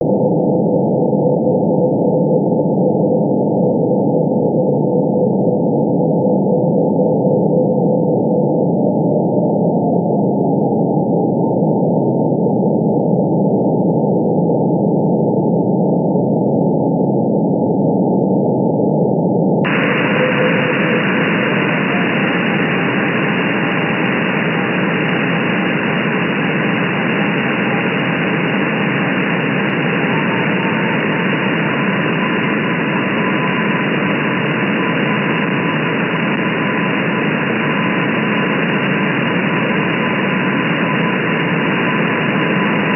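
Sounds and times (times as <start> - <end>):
shortwave radio hiss and static: 19.7 - 42.9.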